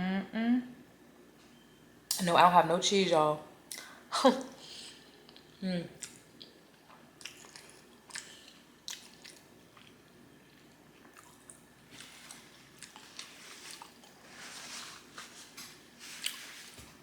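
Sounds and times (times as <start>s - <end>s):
mouth chewing wetly: 7.2s - 10.0s.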